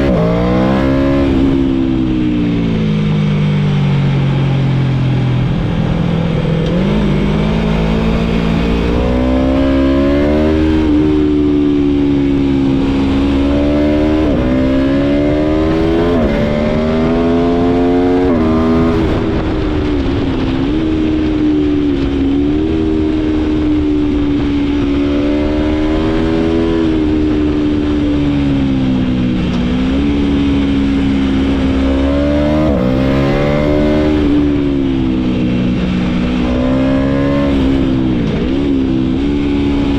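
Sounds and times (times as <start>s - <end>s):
low steady rush: 0.0s - 39.9s
motorcycle engine accelerating hard: 0.0s - 39.9s.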